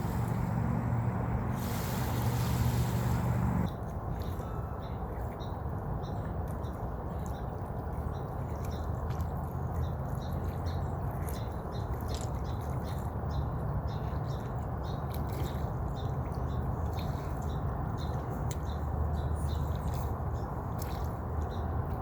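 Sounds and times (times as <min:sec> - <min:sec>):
steady low rumble: 0:00.0 - 0:03.7.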